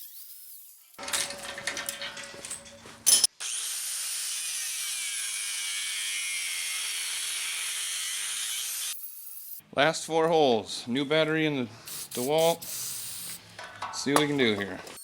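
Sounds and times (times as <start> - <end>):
drill cutting through steel: 3.3 - 9.6.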